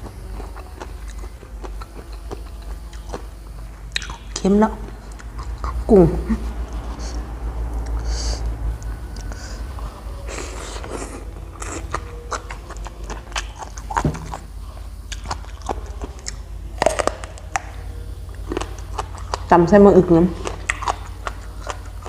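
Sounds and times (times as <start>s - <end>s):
crunchy chewing: 0.0s - 22.0s
steady low hum: 0.0s - 22.0s.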